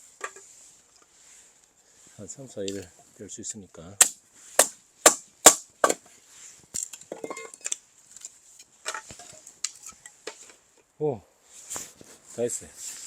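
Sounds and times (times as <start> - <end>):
firewood knocking and clattering: 4.0 - 6.1, 6.7 - 10.6.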